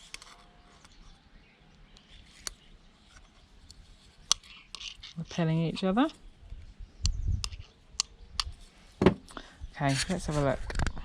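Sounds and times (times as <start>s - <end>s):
magnets clicking together: 3.7s - 5.2s.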